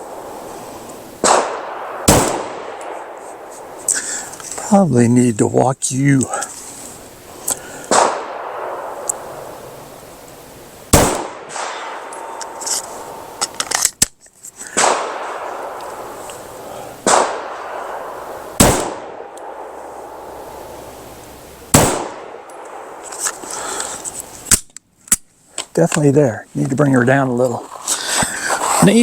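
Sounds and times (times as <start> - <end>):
gunshots with echo: 1.2 - 3.2, 7.9 - 9.6, 10.9 - 12.6, 14.8 - 16.2, 17.0 - 20.4, 21.7 - 23.0.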